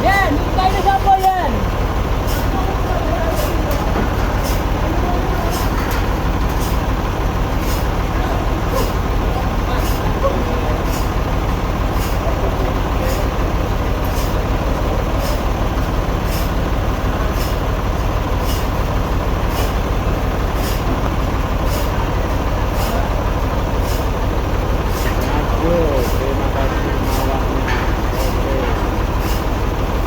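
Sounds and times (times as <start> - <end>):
sawmill machinery hum: 0.0 - 30.0.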